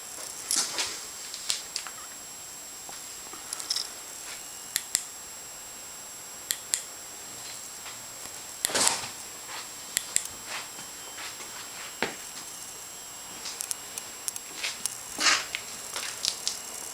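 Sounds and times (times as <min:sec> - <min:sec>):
faint high-pitched whine: 0:00.0 - 0:16.9
sharp clicks: 0:04.7 - 0:05.1, 0:06.5 - 0:06.9, 0:10.0 - 0:10.3, 0:13.5 - 0:16.6.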